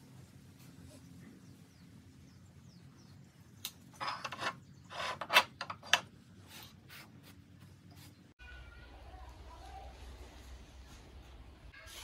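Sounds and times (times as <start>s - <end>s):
low steady hum: 0.0s - 11.8s
scraping rubs: 4.0s - 8.3s.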